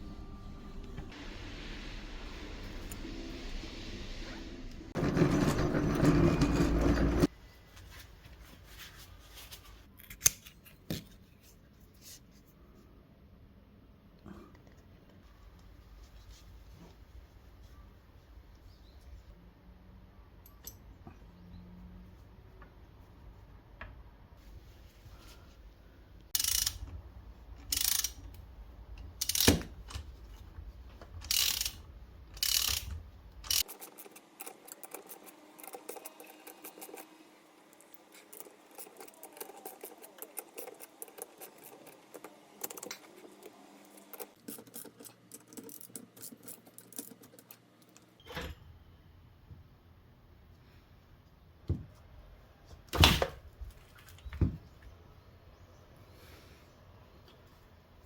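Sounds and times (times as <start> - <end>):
socket ratchet clicking: 26.4 - 26.8, 27.6 - 28.3, 31.2 - 31.8, 32.4 - 33.7.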